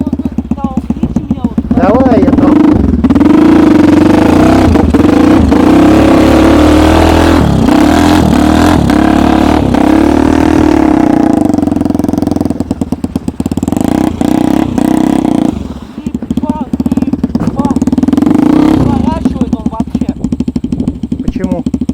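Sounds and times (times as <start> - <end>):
small engine running: 0.0 - 21.9
sharp knocks: 17.3 - 17.8.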